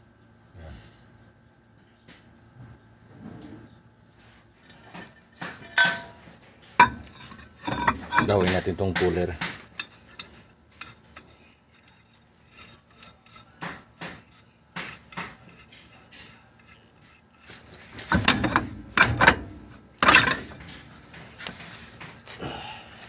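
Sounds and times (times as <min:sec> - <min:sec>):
metal scraping on metal: 0:04.6 - 0:22.1.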